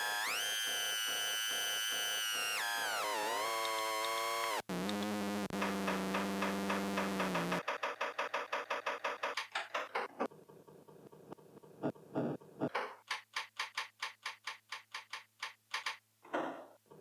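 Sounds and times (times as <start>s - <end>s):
ticking drum machine beat: 2.9s - 9.5s
buzzy synthesizer drone: 4.4s - 7.6s.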